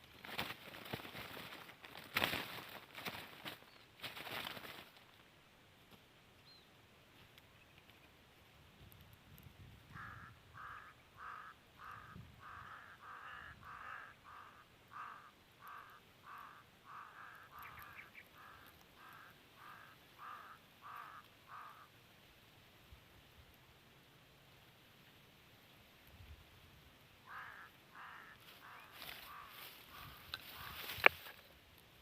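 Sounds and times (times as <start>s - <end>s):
bird giving harsh caw-like calls: 9.9s - 22.0s, 27.2s - 31.4s.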